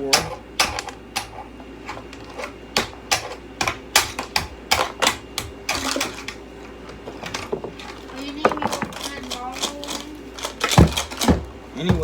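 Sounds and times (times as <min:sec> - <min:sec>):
hard objects knocking together: 0:00.0 - 0:12.0.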